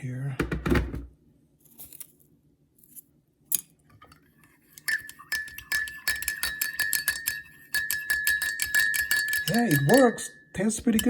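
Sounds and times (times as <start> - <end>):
spoon clinking in glass: 4.8 - 11.0.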